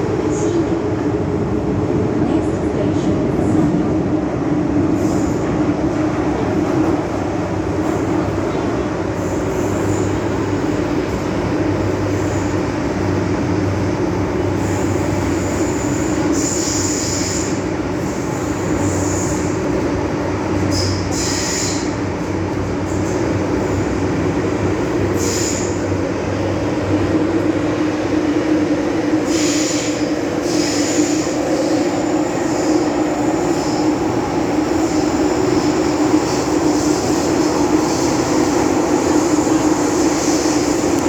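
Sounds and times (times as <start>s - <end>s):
train rumble and hum: 0.0s - 41.0s
train wheel squeals: 14.6s - 19.6s, 20.7s - 22.0s, 25.2s - 25.9s, 29.2s - 41.0s.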